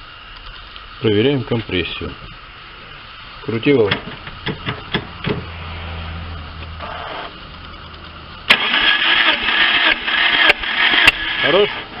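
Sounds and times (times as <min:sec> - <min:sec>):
low steady hum: 0:00.0 - 0:12.0
starter motor cranking engine: 0:08.5 - 0:12.0.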